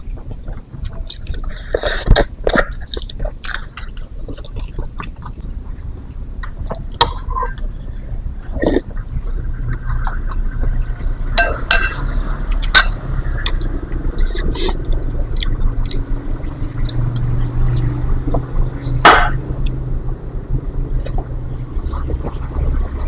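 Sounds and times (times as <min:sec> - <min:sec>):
chewing food: 0:00.0 - 0:19.0, 0:20.5 - 0:23.0
steady low hum: 0:00.0 - 0:23.0
spoon clinking on a plate: 0:11.4 - 0:12.1.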